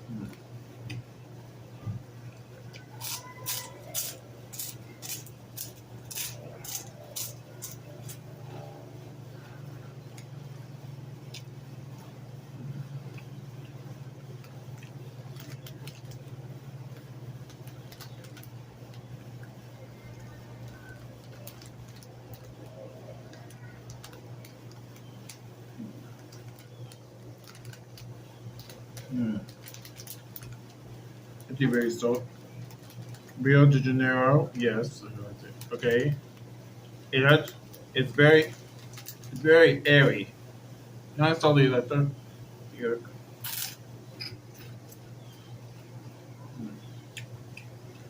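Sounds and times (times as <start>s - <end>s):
steady low hum: 0.0s - 48.0s
puffed snack crunching: 2.8s - 8.2s, 14.4s - 33.4s, 37.2s - 39.5s, 43.4s - 45.0s
chewing crunchy snack: 20.2s - 30.8s.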